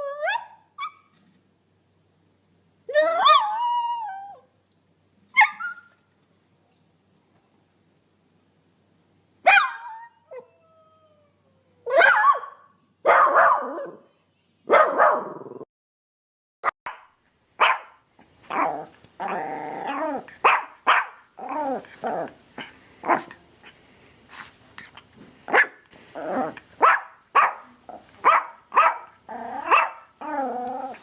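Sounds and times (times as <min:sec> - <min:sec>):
dog barking: 0:09.5 - 0:09.9, 0:11.9 - 0:14.0, 0:14.7 - 0:15.4, 0:16.9 - 0:18.7, 0:20.4 - 0:21.2, 0:25.5 - 0:25.8, 0:26.8 - 0:30.1.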